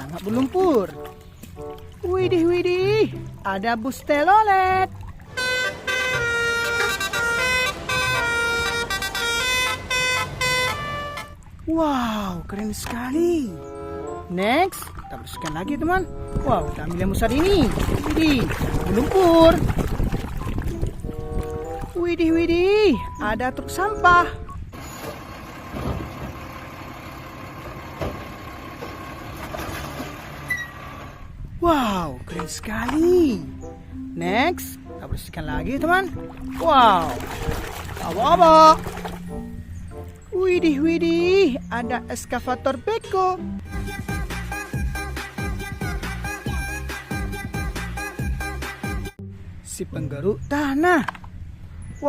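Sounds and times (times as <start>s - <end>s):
garbage truck engine idling: 5.3s - 11.4s, 24.6s - 31.2s
multi-tone bus air horn tune: 5.3s - 11.4s.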